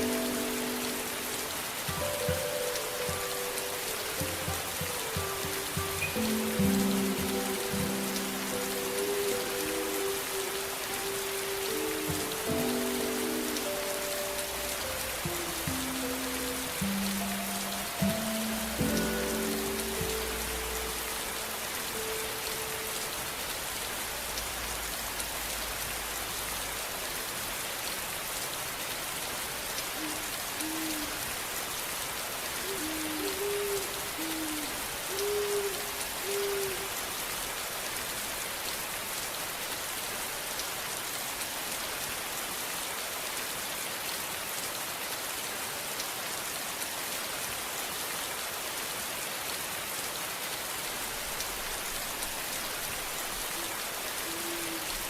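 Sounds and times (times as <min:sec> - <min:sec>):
steady rain: 0:00.0 - 0:55.0
low hooting calls: 0:30.0 - 0:31.3, 0:32.6 - 0:37.0, 0:53.2 - 0:55.0.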